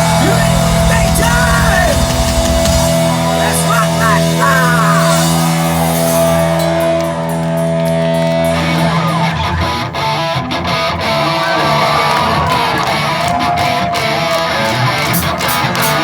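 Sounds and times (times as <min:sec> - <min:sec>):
electric guitar chord ringing: 0:00.0 - 0:11.7
live rock band: 0:00.0 - 0:16.0
strummed guitar: 0:00.0 - 0:16.0.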